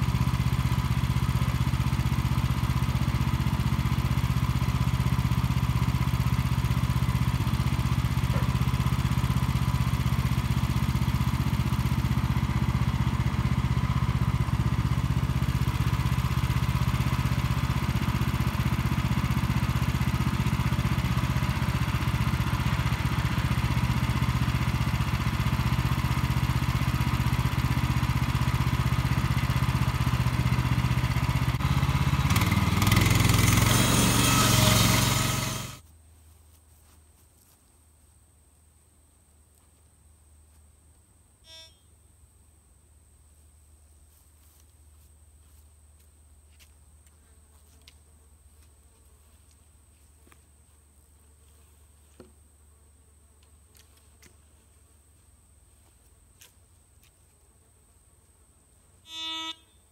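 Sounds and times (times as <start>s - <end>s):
gas engine running steadily: 0.0s - 35.8s.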